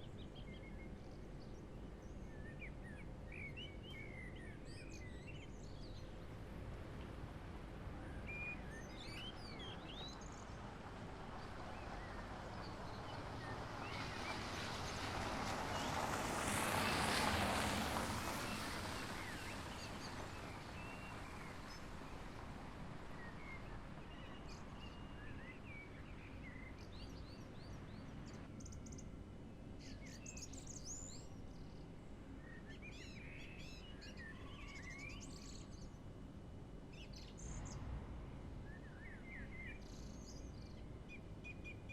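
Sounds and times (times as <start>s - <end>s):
rushing noise: 37.6s - 39.6s.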